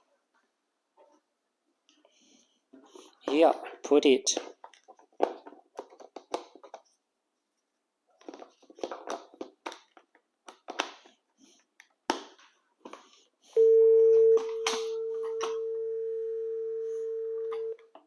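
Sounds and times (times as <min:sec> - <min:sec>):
plastic clicks and knocks: 0:04.4 - 0:06.8
phone dial tone: 0:13.6 - 0:17.8.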